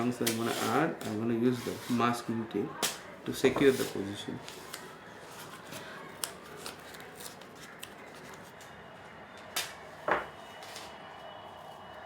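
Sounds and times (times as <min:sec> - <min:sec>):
paper crinkling: 0:03.7 - 0:08.8.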